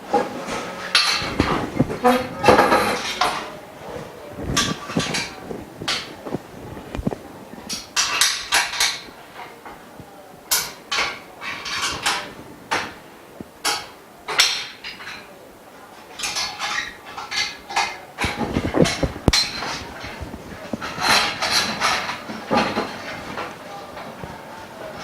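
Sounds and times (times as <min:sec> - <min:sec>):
metal frame parts knocking and clattering: 0:00.1 - 0:03.6, 0:04.5 - 0:06.4, 0:07.7 - 0:09.6, 0:10.5 - 0:13.0, 0:16.1 - 0:24.1.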